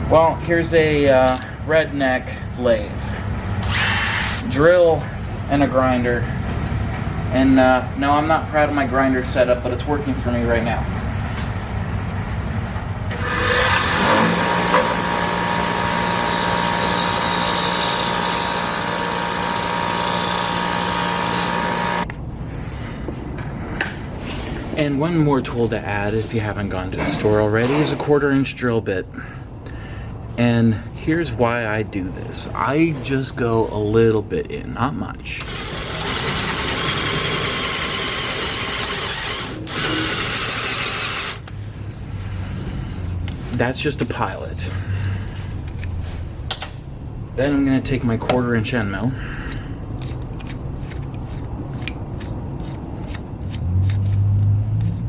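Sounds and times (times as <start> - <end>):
drill whirring into metal: 3.6 - 4.5, 13.1 - 22.1, 35.4 - 41.5
grinder grinding metal: 3.6 - 4.5, 13.1 - 22.1, 35.4 - 41.5.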